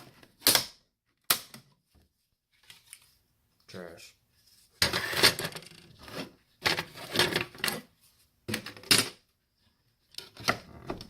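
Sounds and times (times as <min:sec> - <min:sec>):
metal and plastic parts clattering: 0:04.8 - 0:07.9.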